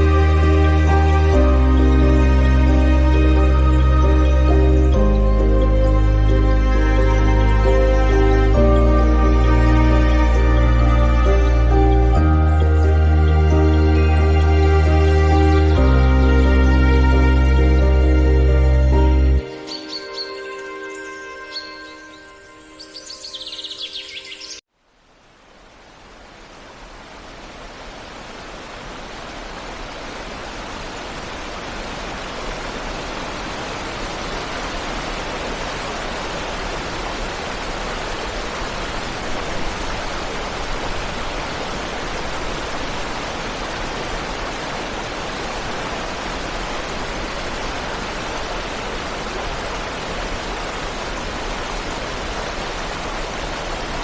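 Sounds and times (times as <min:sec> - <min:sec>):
music: 0:00.0 - 0:24.6
waterfall rushing: 0:00.0 - 0:24.6, 0:25.6 - 0:54.0.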